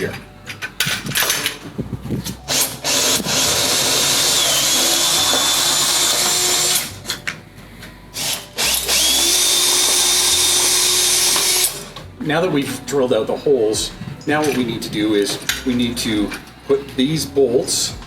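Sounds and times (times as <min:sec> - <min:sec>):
power drill whining: 0:00.0 - 0:07.4, 0:08.1 - 0:12.0.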